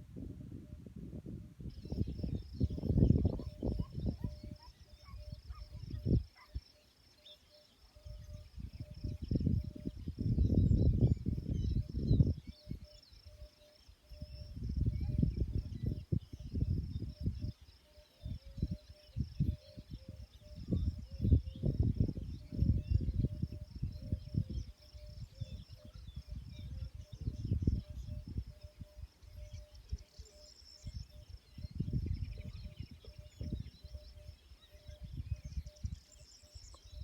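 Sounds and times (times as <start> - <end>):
wind gusting across microphone: 0.0 - 6.4, 8.0 - 13.0, 14.1 - 30.1, 30.8 - 36.2
insects chirping: 1.6 - 37.0.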